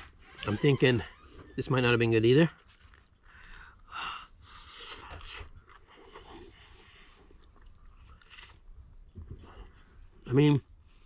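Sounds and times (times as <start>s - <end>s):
person chewing bread: 2.6s - 10.9s.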